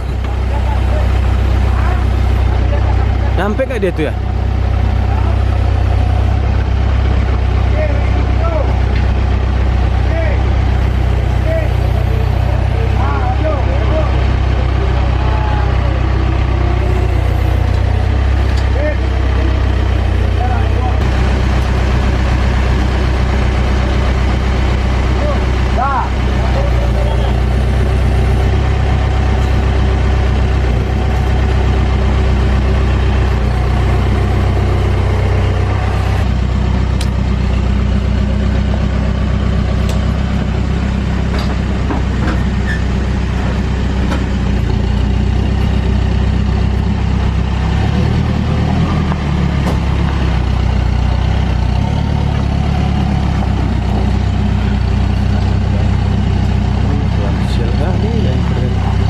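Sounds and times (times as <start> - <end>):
backhoe diesel engine running: 0.0 - 59.0.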